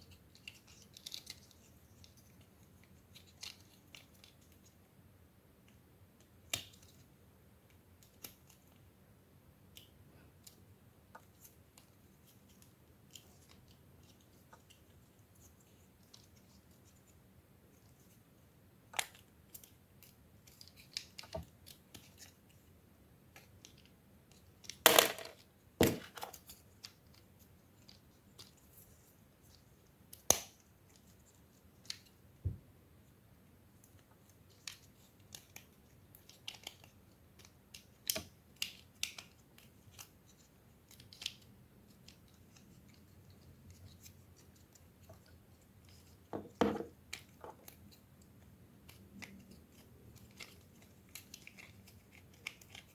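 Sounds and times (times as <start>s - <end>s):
toys being handled: 0.1s - 4.8s, 23.3s - 32.6s, 33.8s - 52.9s.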